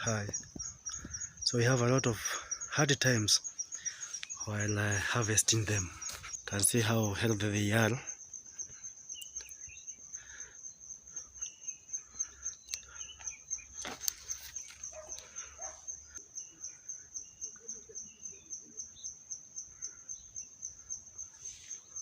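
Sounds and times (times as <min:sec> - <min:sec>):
faint bird calls: 0:00.0 - 0:06.7
insect chirping: 0:00.0 - 0:22.0.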